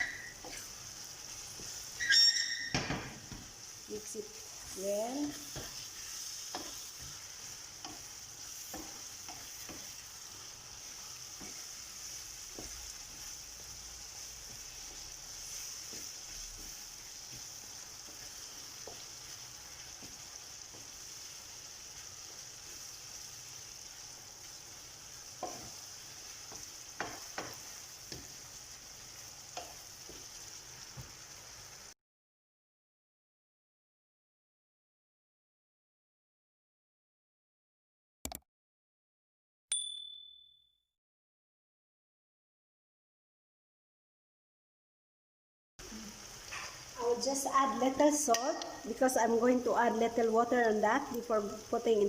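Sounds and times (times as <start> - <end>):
spoon scraping a pan: 0.0 - 2.7, 4.6 - 13.4, 25.3 - 25.9
food sizzling in oil: 0.0 - 32.0, 45.8 - 52.0.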